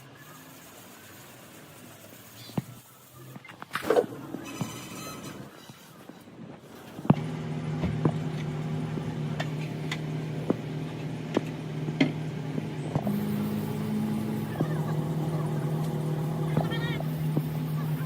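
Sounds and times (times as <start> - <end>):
motor humming: 7.0 - 18.0
higher-pitched hum: 12.0 - 18.0.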